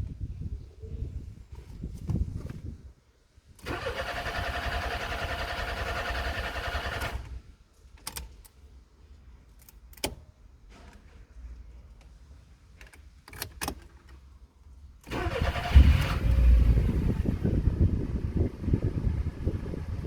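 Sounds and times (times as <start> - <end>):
car engine cranking by starter motor: 3.6 - 7.4, 15.1 - 20.0.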